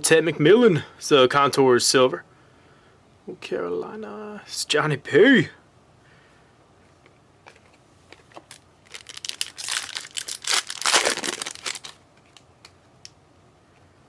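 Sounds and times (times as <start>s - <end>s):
foil wrapper tearing and crinkling: 8.4s - 12.4s.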